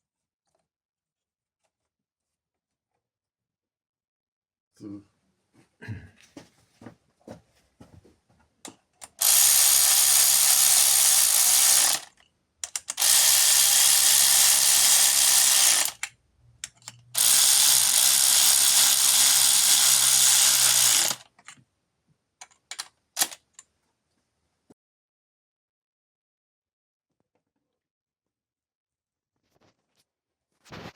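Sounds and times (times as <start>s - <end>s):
power ratchet running: 9.1s - 16.1s, 17.2s - 21.3s, 23.2s - 23.4s.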